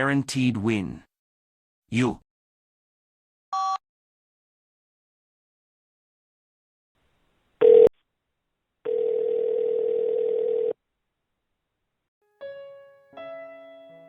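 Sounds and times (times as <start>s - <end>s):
steady telephone tone: 7.6s - 7.9s, 8.9s - 10.8s
telephone line beep: 8.9s - 10.8s.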